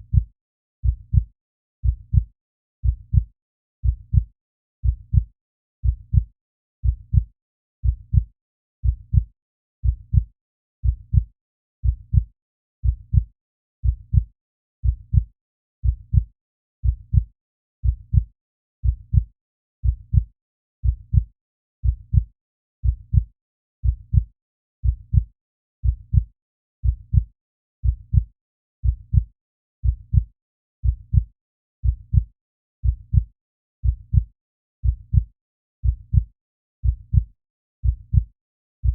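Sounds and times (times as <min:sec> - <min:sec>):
heartbeat thumps: 0:00.9 - 0:01.2, 0:01.9 - 0:02.2, 0:02.9 - 0:03.2, 0:03.9 - 0:04.2, 0:28.9 - 0:29.3, 0:33.1 - 0:38.9.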